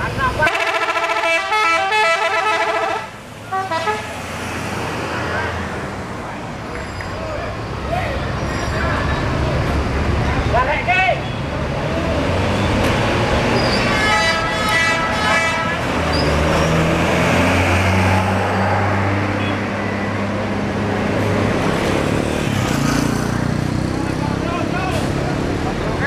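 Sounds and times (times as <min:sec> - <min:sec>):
bus diesel engine drone: 0:00.0 - 0:26.0
multi-tone musical bus horn: 0:00.4 - 0:04.2, 0:13.7 - 0:16.0.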